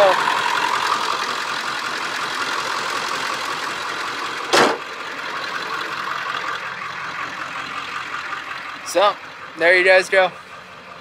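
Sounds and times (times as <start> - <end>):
diesel engine idling: 0.0 - 11.0
sharp knock: 4.5 - 4.8.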